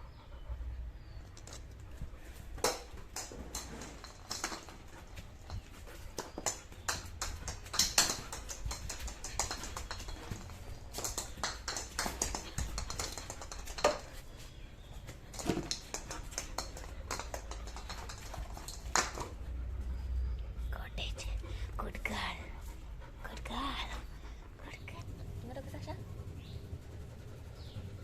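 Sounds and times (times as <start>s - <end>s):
dog claws clicking on hard floor: 1.4s - 14.4s, 15.1s - 19.4s
ball knocking: 2.6s - 14.2s.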